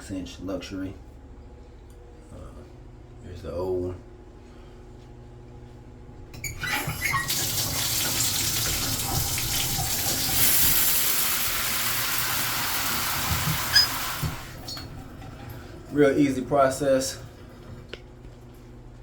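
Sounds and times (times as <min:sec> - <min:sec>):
water spraying from shower head: 0:07.2 - 0:14.8.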